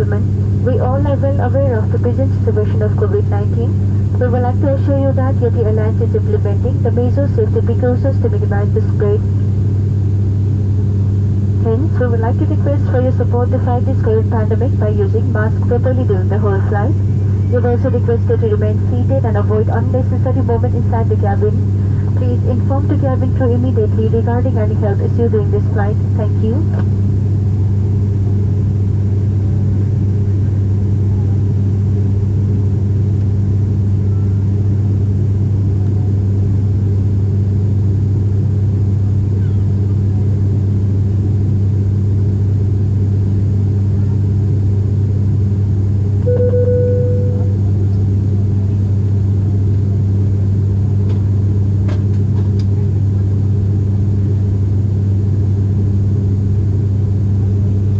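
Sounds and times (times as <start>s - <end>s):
airliner engine drone in cabin: 0.0s - 57.9s
short beep: 46.2s - 47.6s.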